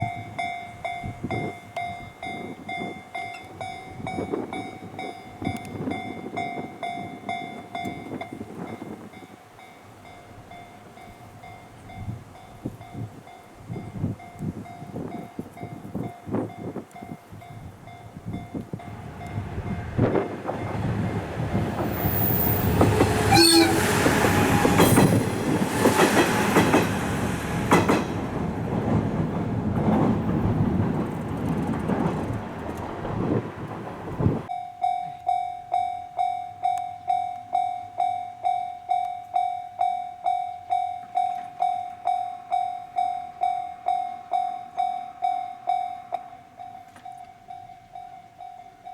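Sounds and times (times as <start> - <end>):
level crossing warning bell: 0.0 - 25.2, 34.5 - 48.9
diesel railcar passing: 0.0 - 34.6, 41.1 - 46.8
train horn: 22.0 - 25.3.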